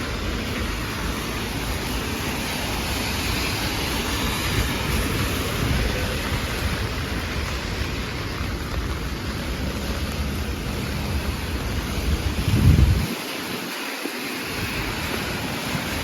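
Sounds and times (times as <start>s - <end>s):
heavy rain hissing: 0.0s - 16.0s
low rumble: 9.3s - 13.1s.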